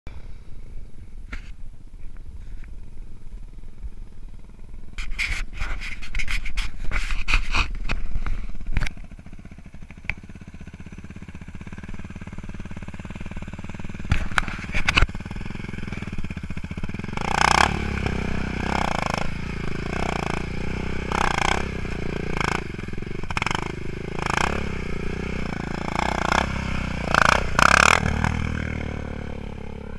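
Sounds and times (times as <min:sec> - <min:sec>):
atv engine revving: 0:07.4 - 0:29.9.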